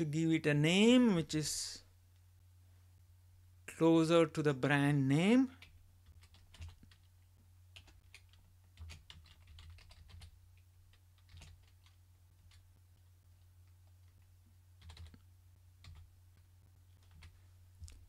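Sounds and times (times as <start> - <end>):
low steady hum: 0.0 - 18.0
keyboard typing: 5.6 - 7.1, 7.7 - 16.1, 16.9 - 17.4.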